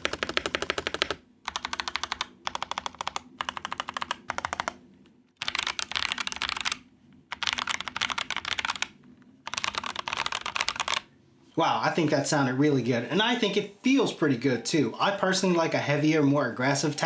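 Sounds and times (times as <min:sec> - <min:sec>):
mechanical keyboard typing: 0:00.0 - 0:04.8, 0:05.4 - 0:11.1.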